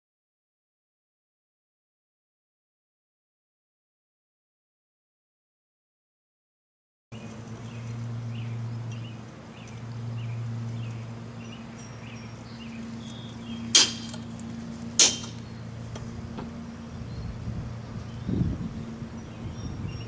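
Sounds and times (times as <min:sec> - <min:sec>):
low hum: 0:07.2 - 0:20.0
hammer blows on an anvil: 0:13.7 - 0:14.3, 0:15.0 - 0:15.5.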